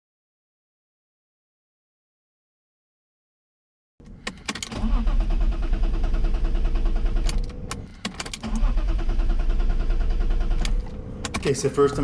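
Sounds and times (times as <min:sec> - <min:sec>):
engine cranking on starter: 0:04.0 - 0:12.0
starter clicks: 0:07.0 - 0:08.8, 0:09.5 - 0:11.6.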